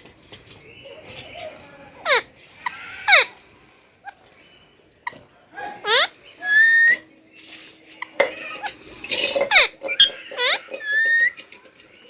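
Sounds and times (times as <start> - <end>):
parrot shrill calls: 2.1 - 3.4, 5.8 - 7.0, 9.4 - 11.4.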